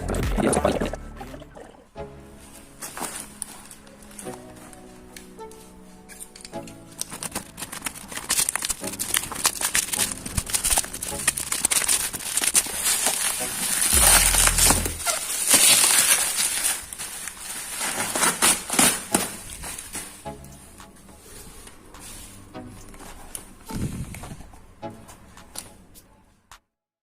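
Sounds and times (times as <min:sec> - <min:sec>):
packaging rustling and crinkling: 0:02.6 - 0:20.3
low hum: 0:13.9 - 0:15.2.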